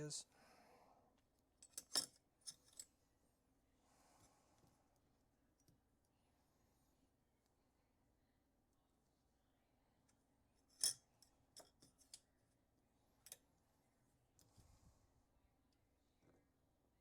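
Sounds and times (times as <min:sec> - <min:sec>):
metallic clicks of lock parts: 0:01.6 - 0:02.9, 0:10.6 - 0:12.3, 0:13.2 - 0:13.4.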